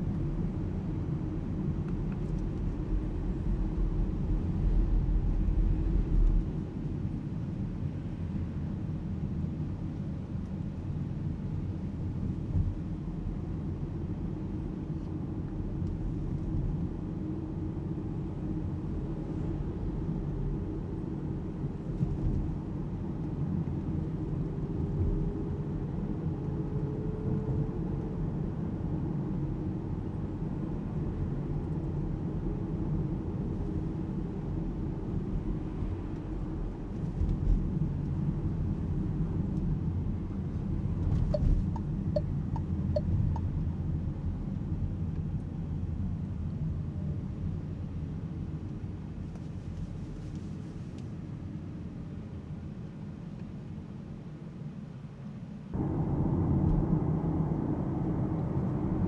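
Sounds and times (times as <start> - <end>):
road and tyre noise: 0.0 - 54.6, 55.7 - 59.0
turn signal ticking: 41.3 - 43.5.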